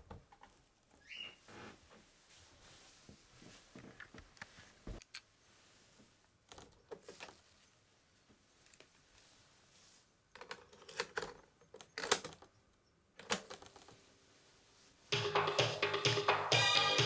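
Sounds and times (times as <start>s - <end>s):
music through a speaker: 15.1s - 17.0s.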